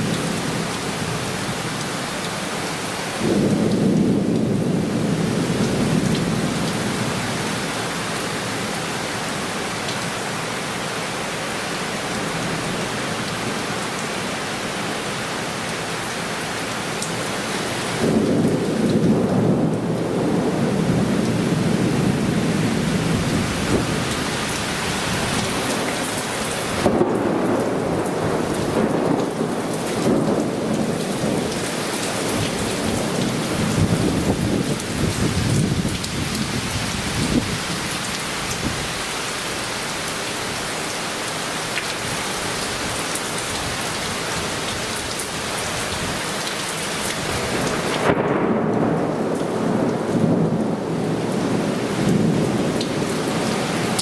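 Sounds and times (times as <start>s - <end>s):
heavy rain pouring: 0.0s - 54.0s
thunder: 3.2s - 7.2s, 18.0s - 24.0s, 26.8s - 31.6s, 47.5s - 53.2s.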